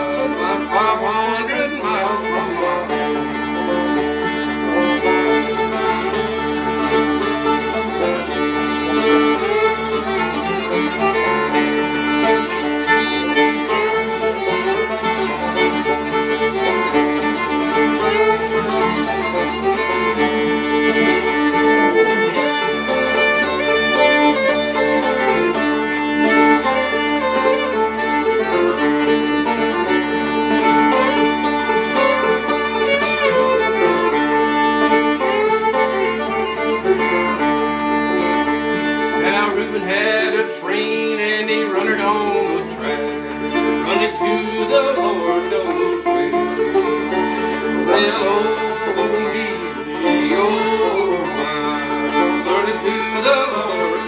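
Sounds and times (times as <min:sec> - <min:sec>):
banjo: 0:00.0 - 0:54.0
fiddle: 0:00.0 - 0:54.0
guitar: 0:00.0 - 0:54.0.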